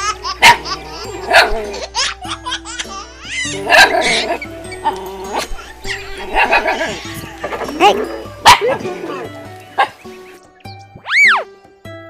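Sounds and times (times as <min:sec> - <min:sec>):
dogs barking and yipping: 0:00.0 - 0:11.5
background music: 0:00.0 - 0:12.0
laughter: 0:05.6 - 0:07.7.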